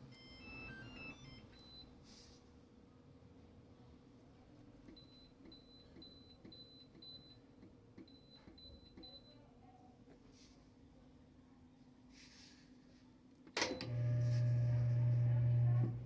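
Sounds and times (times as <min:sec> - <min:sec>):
faint electronic beeps: 0:00.0 - 0:01.9.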